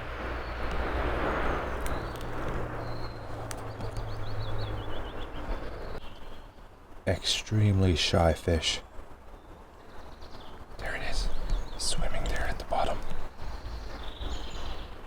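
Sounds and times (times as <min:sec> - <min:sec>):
small bird chirping: 0:00.3 - 0:06.6, 0:09.4 - 0:15.0.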